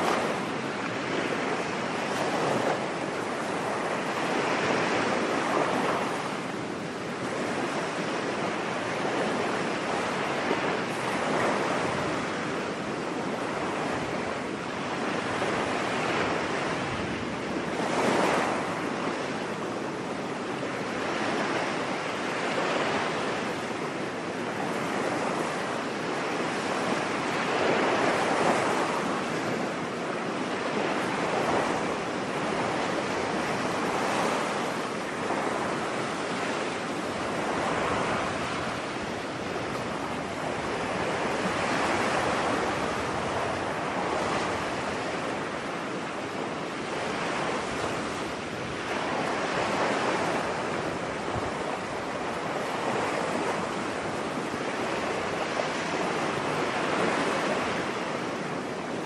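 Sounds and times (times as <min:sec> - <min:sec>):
waves breaking on a beach: 0:00.0 - 0:59.0.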